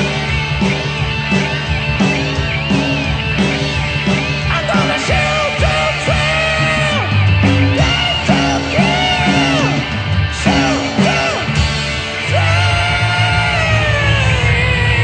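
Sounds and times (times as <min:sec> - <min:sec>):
electric guitar: 0:00.0 - 0:15.0
live rock band playing: 0:00.0 - 0:15.0
person singing: 0:04.4 - 0:15.0.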